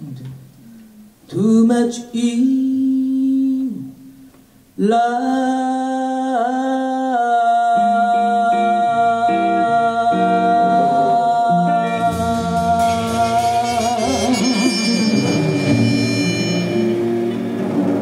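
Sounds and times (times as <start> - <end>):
jazz band playing: 11.8 - 18.0
long held note: 12.0 - 17.6
cymbals: 12.0 - 18.0.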